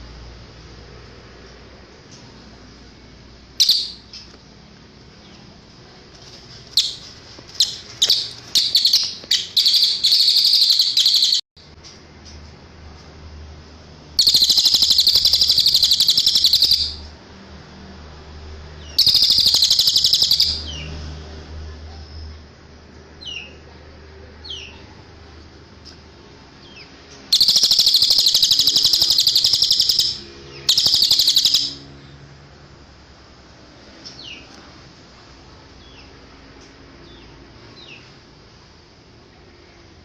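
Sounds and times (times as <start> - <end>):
songbird trilling: 3.6 - 4.3, 6.8 - 11.4, 14.2 - 17.1, 18.9 - 20.8, 27.3 - 31.9.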